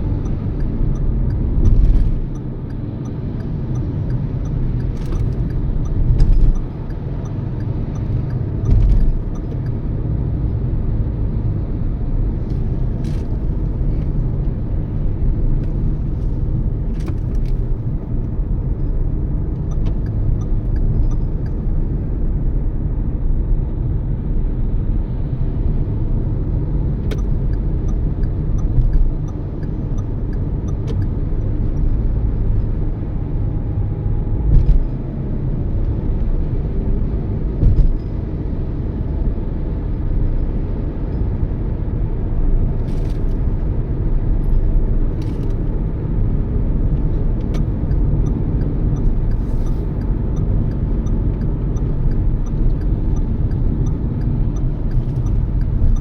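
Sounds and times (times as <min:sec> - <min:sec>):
car road and engine rumble: 0:00.0 - 0:56.0
light ticks and bumps: 0:00.2 - 0:09.8, 0:46.9 - 0:56.0.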